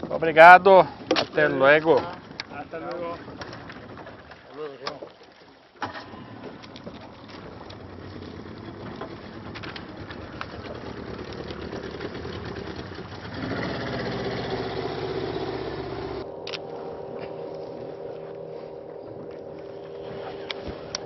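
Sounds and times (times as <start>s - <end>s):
boat motor running: 5.9s - 21.0s.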